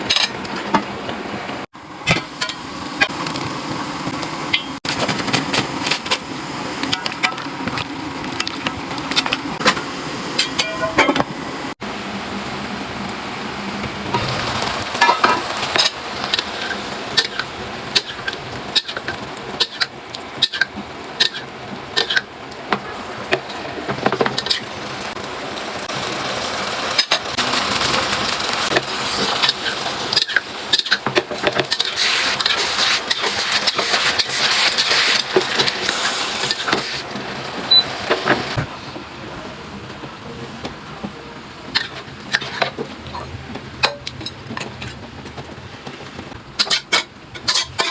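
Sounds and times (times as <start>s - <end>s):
utensils clinking and scraping: 15.0s - 22.3s, 46.6s - 47.9s.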